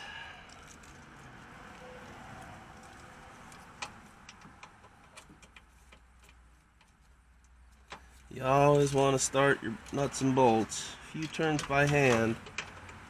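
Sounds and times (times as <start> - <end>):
small metallic clicks: 11.2 - 13.0.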